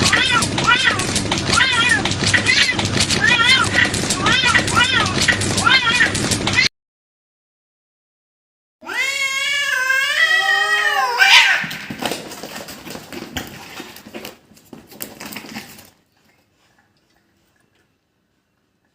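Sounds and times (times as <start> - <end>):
cat yowling: 0.0 - 6.7, 8.8 - 11.9
harsh cat screech: 8.8 - 11.9.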